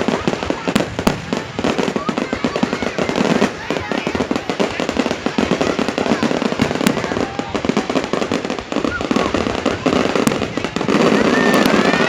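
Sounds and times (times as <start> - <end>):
fireworks crackling bangs: 0.0 - 12.0
people's voices: 0.0 - 12.0.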